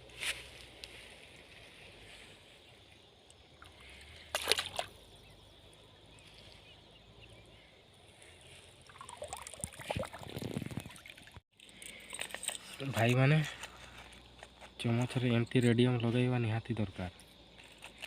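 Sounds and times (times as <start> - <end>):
water sloshing and splashing: 3.5 - 5.2, 8.6 - 11.4.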